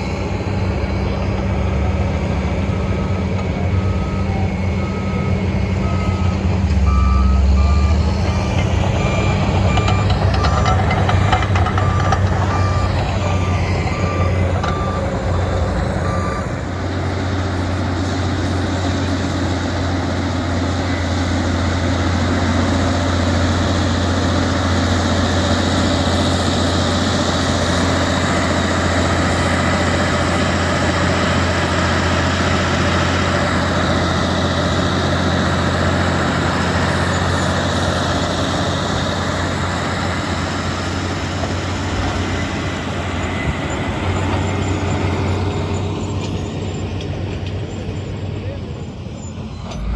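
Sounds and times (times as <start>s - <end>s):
diesel engine running: 0.0s - 49.9s
reverse alarm beeping: 2.7s - 16.6s.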